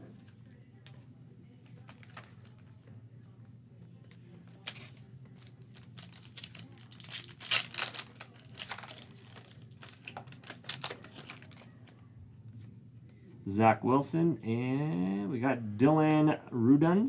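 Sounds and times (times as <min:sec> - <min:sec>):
card pack wrapper crinkling: 0:04.6 - 0:11.8.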